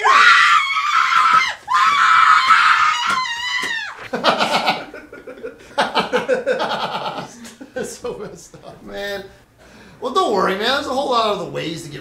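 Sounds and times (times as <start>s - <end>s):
woman screaming in fright: 0.0s - 4.0s.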